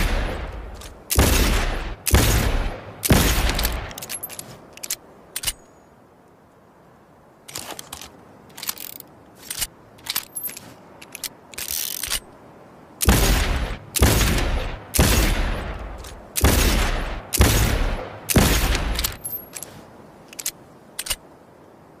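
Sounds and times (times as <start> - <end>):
loud gunshots: 0.0 - 0.6, 1.2 - 4.0, 13.0 - 19.1.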